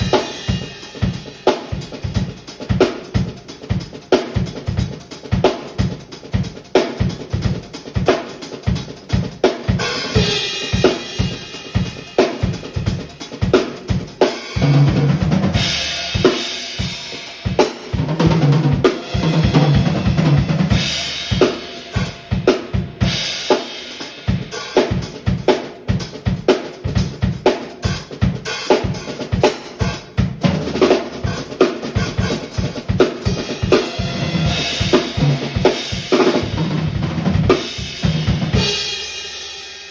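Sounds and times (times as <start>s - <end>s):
acoustic drum kit beat: 0.0s - 39.9s.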